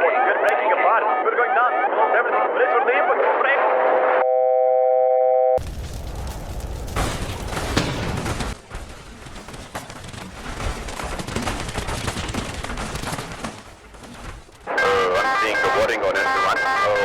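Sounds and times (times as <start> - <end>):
crash impact and explosion: 5.6 - 13.6
crackling bangs: 5.6 - 16.2
electronic warning tone: 14.7 - 17.0.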